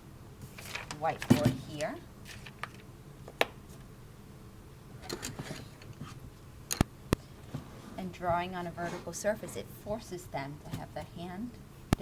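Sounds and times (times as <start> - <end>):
faint scratchy rubbing: 7.5 - 9.8.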